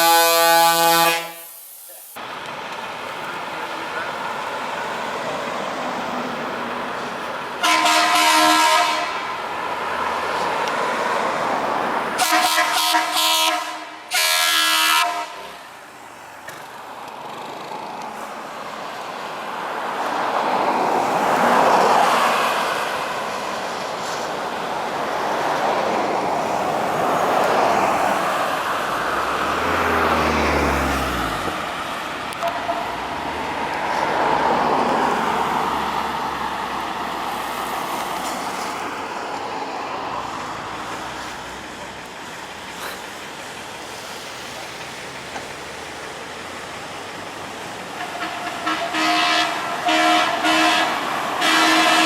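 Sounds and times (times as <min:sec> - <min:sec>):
multi-tone air horn blasts: 0:00.0 - 0:01.6, 0:07.6 - 0:09.2, 0:12.2 - 0:15.6, 0:32.4 - 0:33.0, 0:48.0 - 0:52.0
road traffic passing: 0:00.0 - 0:52.0.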